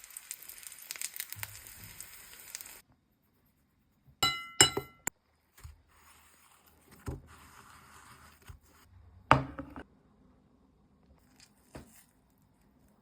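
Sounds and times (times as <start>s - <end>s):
kitchen utensils knocking and scraping: 4.2s - 5.1s.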